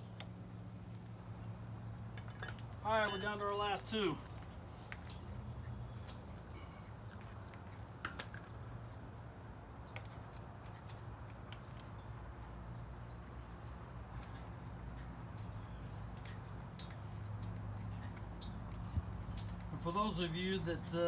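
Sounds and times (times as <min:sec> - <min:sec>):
lug wrench clinking on metal: 0:01.9 - 0:05.2, 0:14.1 - 0:15.1, 0:16.1 - 0:21.0.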